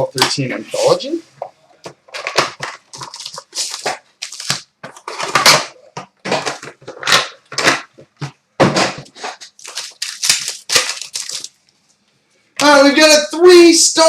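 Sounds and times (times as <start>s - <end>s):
wrappers tearing and crinkling: 2.1s - 7.9s, 9.0s - 11.8s.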